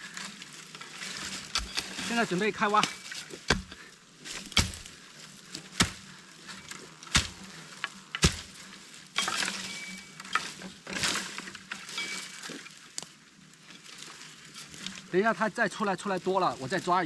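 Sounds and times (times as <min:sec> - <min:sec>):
soil scraping and crumbling: 0:00.0 - 0:17.0
digging tool striking earth: 0:01.2 - 0:05.0, 0:05.6 - 0:07.6, 0:08.2 - 0:08.6.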